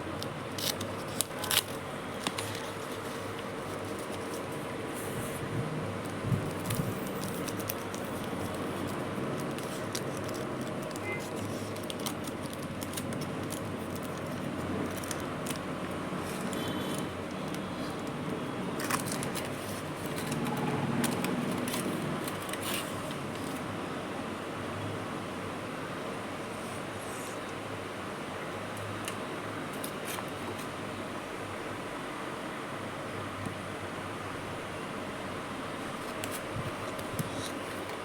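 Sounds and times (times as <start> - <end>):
foil wrapper crinkling: 0.5 - 4.6, 6.1 - 18.2, 18.8 - 22.9.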